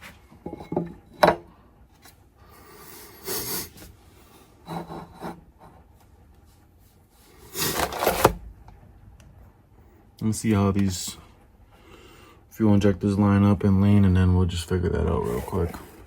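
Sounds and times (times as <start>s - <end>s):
parts scraping: 7.2s - 8.4s, 15.0s - 16.0s.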